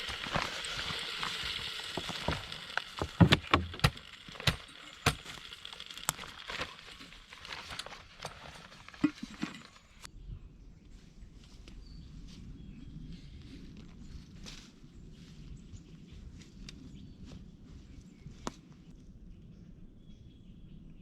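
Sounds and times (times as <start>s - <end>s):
campfire hissing: 0.0s - 7.0s
campfire cracks and pops: 0.0s - 7.5s.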